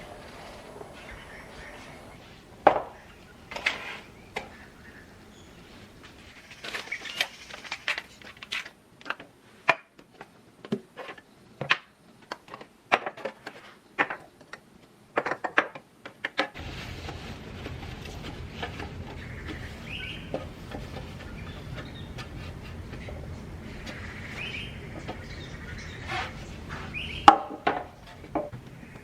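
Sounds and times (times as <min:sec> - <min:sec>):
low hiss and hum: 0:00.0 - 0:09.6, 0:16.6 - 0:29.0.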